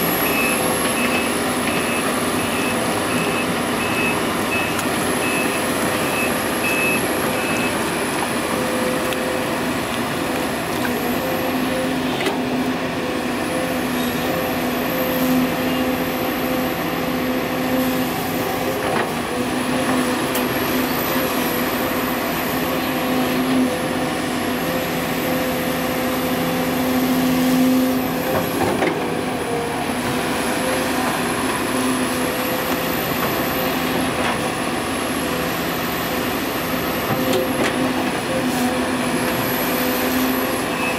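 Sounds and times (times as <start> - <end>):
diesel machinery running: 0.0 - 40.9
reversing beeper: 0.1 - 8.0.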